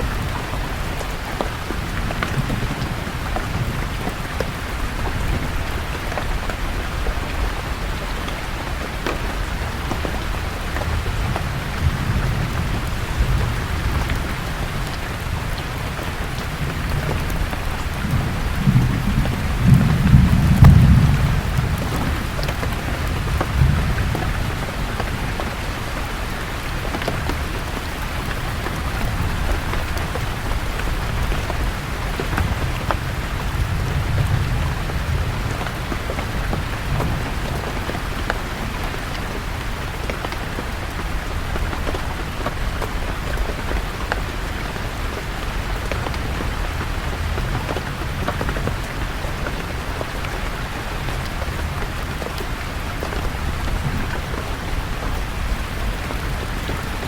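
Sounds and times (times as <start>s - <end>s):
raindrops ticking: 0.0s - 57.0s
steady rain falling: 0.0s - 57.0s
distant thunder rumbling: 8.6s - 26.3s.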